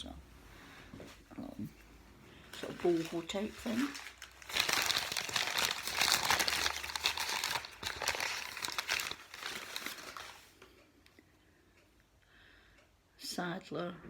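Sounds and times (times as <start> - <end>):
packing wrapping crinkling: 2.5 - 10.7.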